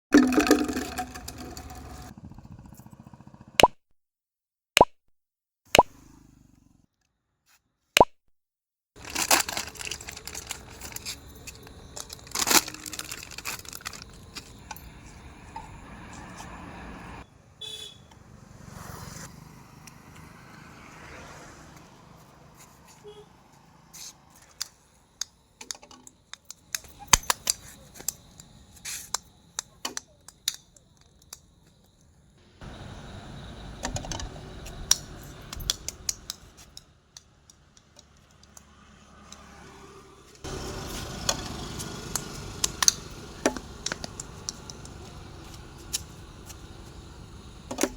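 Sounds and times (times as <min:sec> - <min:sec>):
small balls knocking plastic toy: 0:00.2 - 0:02.1
handling and rustling: 0:09.0 - 0:15.3.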